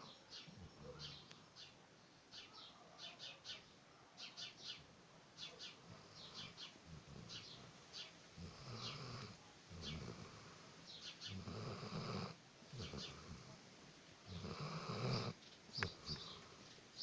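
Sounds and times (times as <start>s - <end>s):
faint birds chirping: 0.0s - 17.0s
dog snoring: 8.4s - 10.6s, 11.2s - 13.5s, 14.3s - 16.2s.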